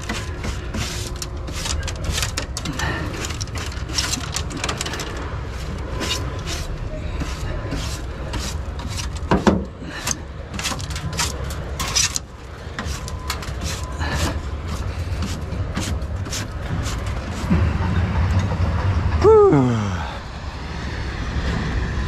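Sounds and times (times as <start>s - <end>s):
broom sweeping: 0.0s - 4.4s, 5.4s - 12.2s, 12.8s - 17.5s.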